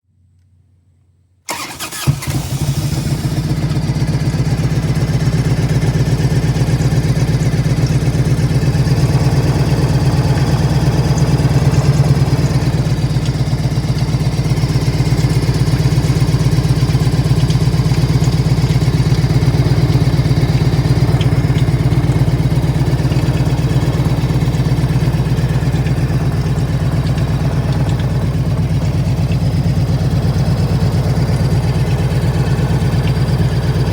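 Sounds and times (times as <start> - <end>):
faint irregular engine ticking: 1.5 - 33.9
motorcycle engine starting and idling: 1.5 - 33.9.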